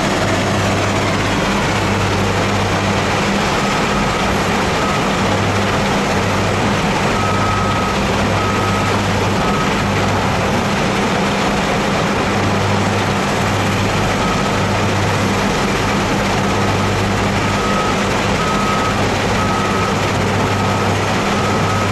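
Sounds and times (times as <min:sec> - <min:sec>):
diesel engine working: 0:00.0 - 0:21.9
reversing alarm beeping: 0:00.6 - 0:10.3, 0:13.1 - 0:15.2, 0:16.4 - 0:21.9.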